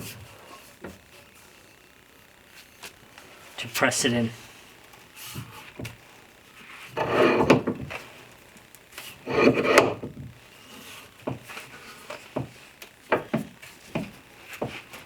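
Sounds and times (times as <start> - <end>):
vise screw grinding: 7.0 - 7.6, 9.2 - 10.1.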